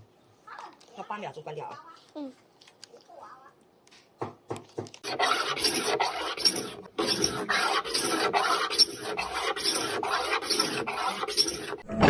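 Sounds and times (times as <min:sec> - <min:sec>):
rasping scraping strokes: 0:05.0 - 0:11.8.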